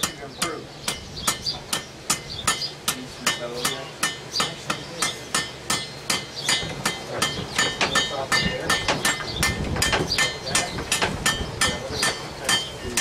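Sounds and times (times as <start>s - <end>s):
hammer striking iron on anvil: 0.0s - 13.0s.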